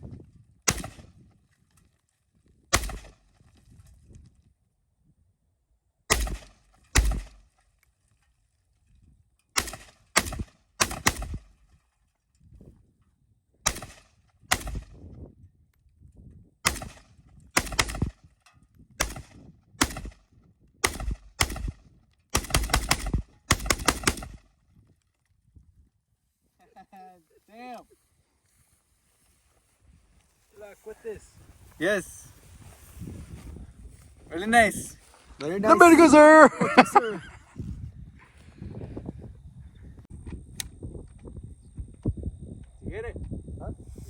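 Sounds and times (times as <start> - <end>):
gunshots: 0.7 - 1.1, 2.7 - 3.2, 6.1 - 7.4, 9.6 - 11.4, 13.7 - 14.8, 16.6 - 18.1, 19.0 - 20.2, 20.8 - 21.8, 22.4 - 24.4.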